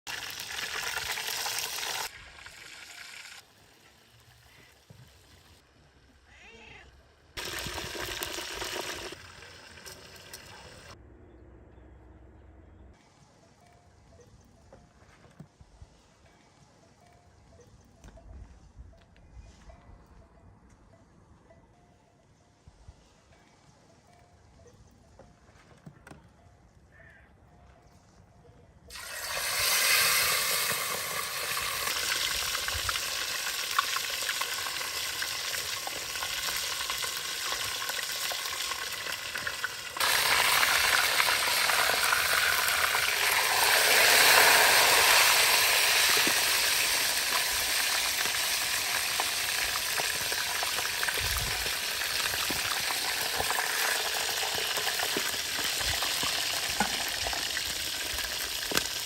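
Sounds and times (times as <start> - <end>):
food sizzling in hot oil: 0.1 - 3.4, 7.4 - 11.0, 28.9 - 59.0.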